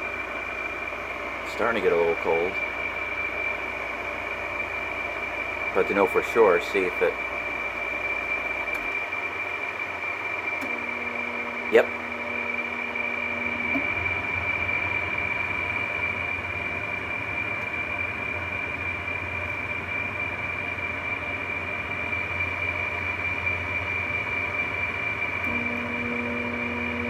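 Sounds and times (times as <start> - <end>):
air conditioner fan rush: 0.0 - 27.0
high-pitched whine: 0.0 - 27.0
low hum: 7.1 - 27.0.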